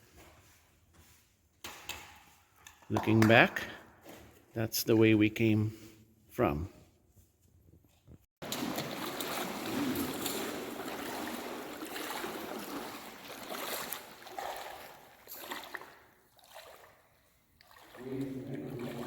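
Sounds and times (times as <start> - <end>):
rushing stream water: 8.4 - 15.8.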